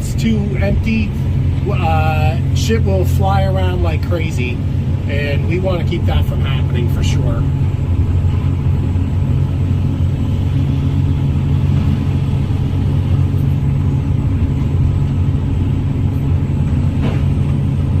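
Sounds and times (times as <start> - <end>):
heavy diesel machinery running: 0.0 - 18.0.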